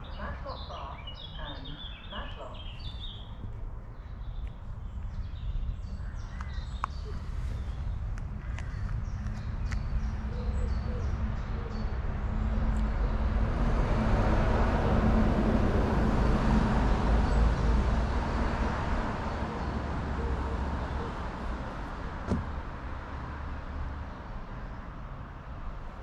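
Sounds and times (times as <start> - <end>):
vehicle passing: 9.0 - 25.8.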